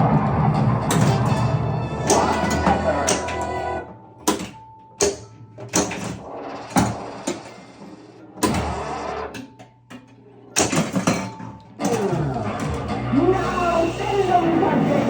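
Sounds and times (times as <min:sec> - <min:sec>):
pinball game sounds: 0:00.0 - 0:15.0
pinball knocks and clacks: 0:00.8 - 0:03.6, 0:04.2 - 0:07.7, 0:08.4 - 0:12.9.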